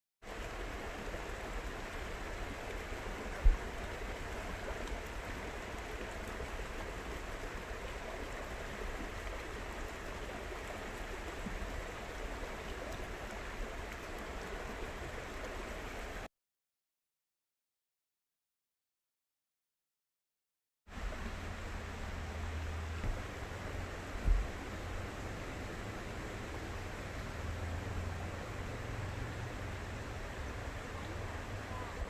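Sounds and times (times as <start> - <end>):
stream flowing: 0.2 - 16.3, 20.9 - 32.0
low thump: 24.2 - 24.5.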